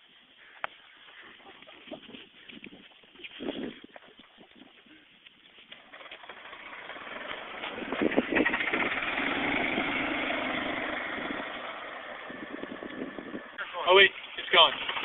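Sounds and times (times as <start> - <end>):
vehicle engine running: 5.8 - 13.6.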